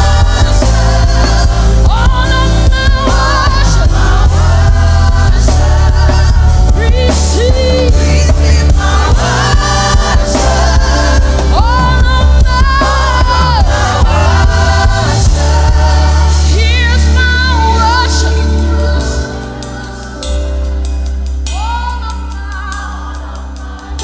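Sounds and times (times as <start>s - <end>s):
choir singing: 0.0s - 20.9s, 22.3s - 24.0s
person singing with vibrato: 0.0s - 24.0s
steady bass: 0.0s - 24.0s.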